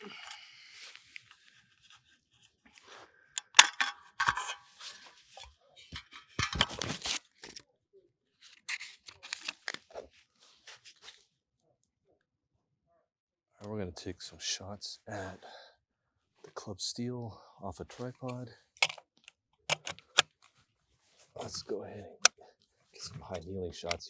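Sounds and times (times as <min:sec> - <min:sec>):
gear rustling and scraping: 0:03.4 - 0:04.6, 0:05.4 - 0:07.6.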